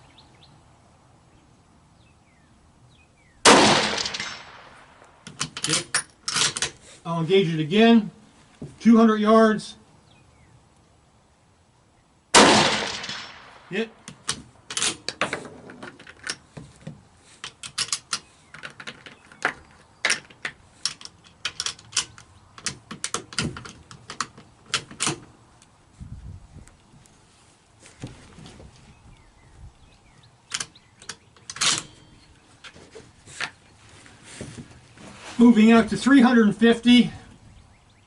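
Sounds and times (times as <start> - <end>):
rifle bolt clicks and rattles: 3.8 - 6.8, 12.7 - 25.8, 30.5 - 32.0.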